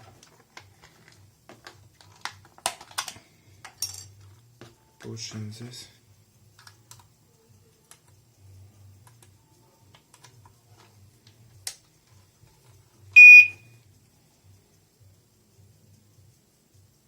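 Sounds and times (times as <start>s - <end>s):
high-pitched beep: 13.2s - 13.7s.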